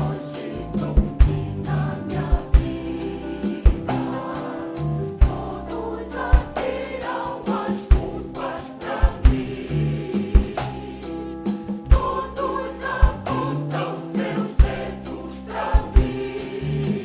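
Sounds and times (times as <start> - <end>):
band accompaniment: 0.0 - 17.0
choir singing gospel: 0.0 - 17.0
low beat thumps: 0.8 - 4.3, 5.0 - 5.7, 6.3 - 6.8, 7.9 - 13.5, 14.6 - 15.1, 15.8 - 16.6.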